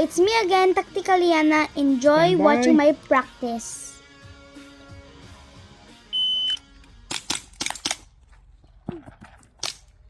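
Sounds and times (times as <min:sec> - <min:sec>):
shot timer beep: 0:06.1 - 0:06.6.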